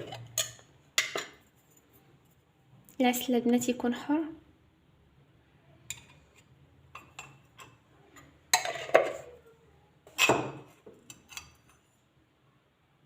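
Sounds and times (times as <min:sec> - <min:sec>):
spoon scraping a dish: 0:00.0 - 0:02.0, 0:05.8 - 0:09.4, 0:10.0 - 0:12.0.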